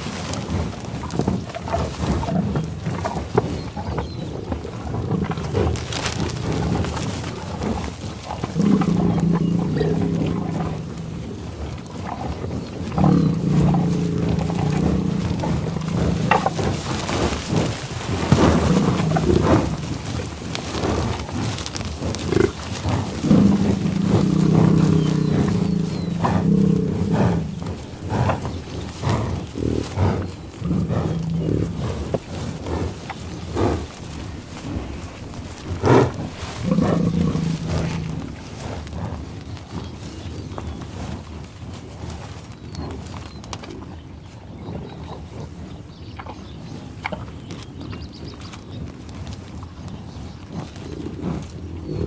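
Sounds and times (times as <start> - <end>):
bison grunting: 0.4 - 39.3, 51.0 - 52.0.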